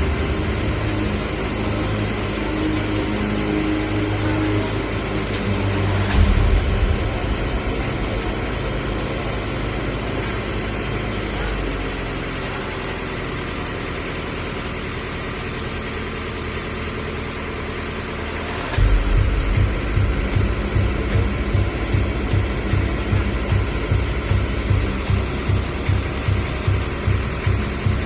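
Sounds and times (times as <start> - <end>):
truck engine idling: 0.0 - 28.0
deep regular thumping: 5.4 - 11.3, 18.8 - 28.0.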